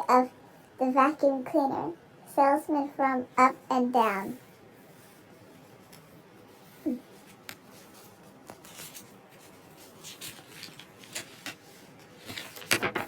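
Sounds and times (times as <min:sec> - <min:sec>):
rustling: 0:04.2 - 0:13.0.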